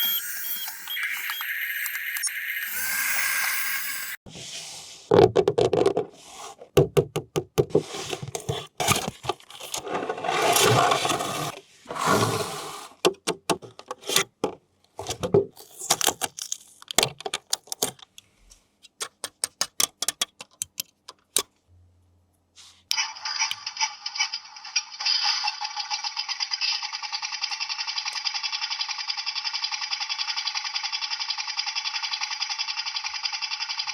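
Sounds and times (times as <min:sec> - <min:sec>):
cardboard and plastic scraping: 0:07.7 - 0:18.1
sharp clicks and rattles: 0:15.8 - 0:18.3, 0:18.9 - 0:21.5, 0:25.4 - 0:33.9.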